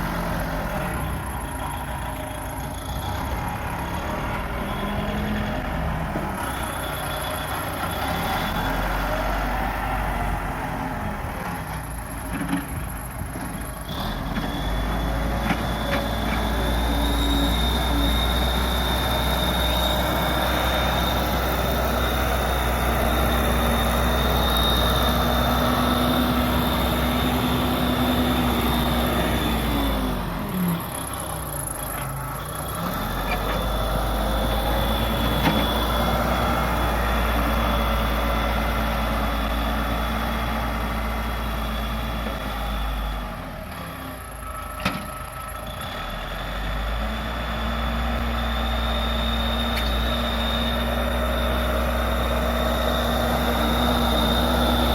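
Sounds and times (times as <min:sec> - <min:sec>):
diesel engine revving: 0:00.0 - 0:54.9.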